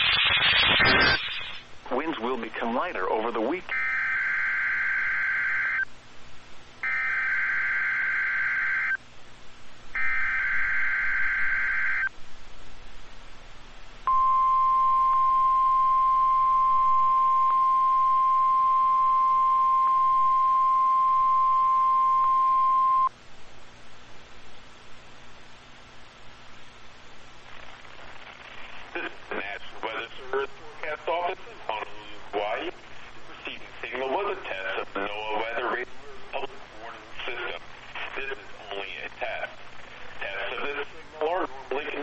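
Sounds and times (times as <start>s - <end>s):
buzzing digital data warble: 0.0s - 1.7s, 3.7s - 5.9s, 6.8s - 9.0s, 10.0s - 12.1s
steady warning alarm tone: 3.7s - 5.9s, 6.8s - 9.0s, 10.0s - 12.1s, 14.1s - 23.1s.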